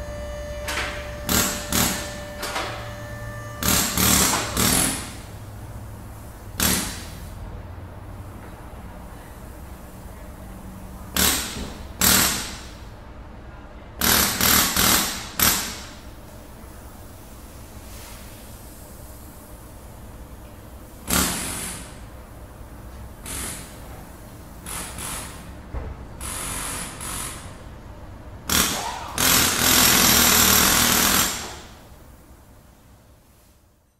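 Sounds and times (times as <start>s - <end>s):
power tool rattling hiss: 3.6s - 5.3s, 21.0s - 22.0s, 23.2s - 23.8s, 24.6s - 25.5s, 28.5s - 31.8s.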